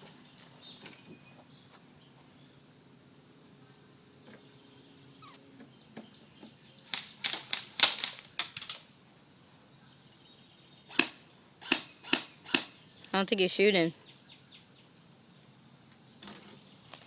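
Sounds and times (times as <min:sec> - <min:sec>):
airsoft gun shots: 0:10.9 - 0:12.8.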